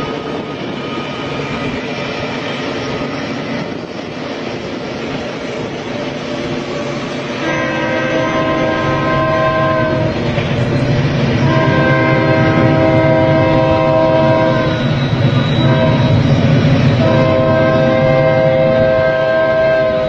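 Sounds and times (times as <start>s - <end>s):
moving train rumble: 0.0s - 20.0s
train horn blasts: 7.4s - 10.2s, 11.4s - 14.9s, 15.6s - 20.0s.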